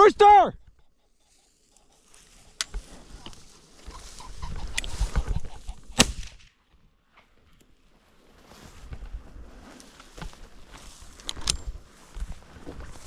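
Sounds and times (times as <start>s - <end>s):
pheasant cackling: 0.6s - 6.2s
wings fluttering: 0.7s - 6.5s.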